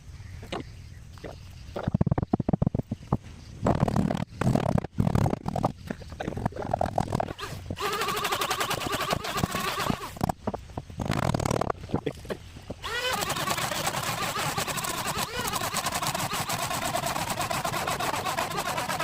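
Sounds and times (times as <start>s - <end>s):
motor running: 6.5s - 10.4s, 12.8s - 19.0s.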